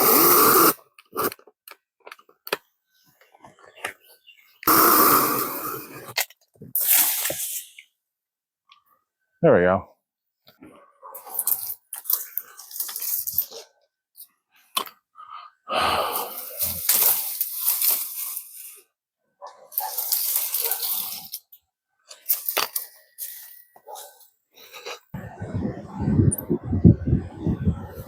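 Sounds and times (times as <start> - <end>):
branches and brush rustling: 19.7 - 21.5.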